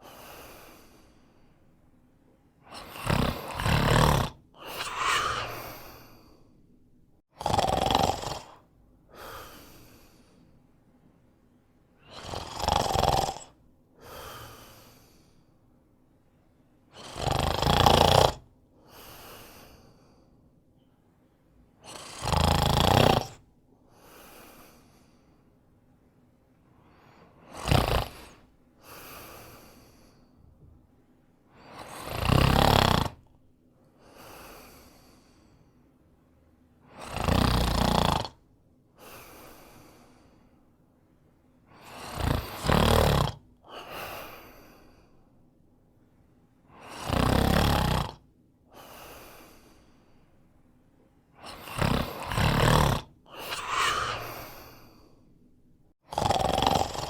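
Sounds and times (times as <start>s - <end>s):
quiet breath: 0.0s - 3.6s, 4.6s - 7.3s, 8.5s - 12.2s, 13.4s - 17.2s, 18.7s - 22.1s, 23.8s - 32.0s, 33.4s - 37.2s, 38.3s - 42.7s, 43.4s - 47.3s, 48.1s - 56.0s
man snoring: 2.7s - 6.3s, 7.3s - 8.6s, 12.0s - 15.3s, 17.0s - 19.8s, 21.8s - 23.4s, 27.4s - 30.0s, 31.6s - 33.3s, 36.9s - 38.4s, 41.8s - 44.5s, 46.7s - 48.2s, 51.4s - 55.1s, 56.0s - 57.0s.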